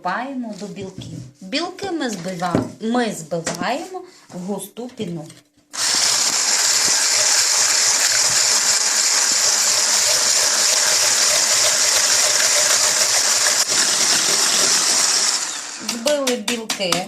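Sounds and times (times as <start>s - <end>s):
electric mixer whirring: 5.8s - 16.1s.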